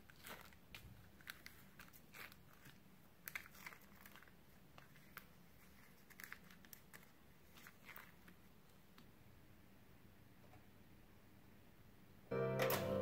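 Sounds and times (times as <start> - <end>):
crunching potato chips: 0.0 - 8.3.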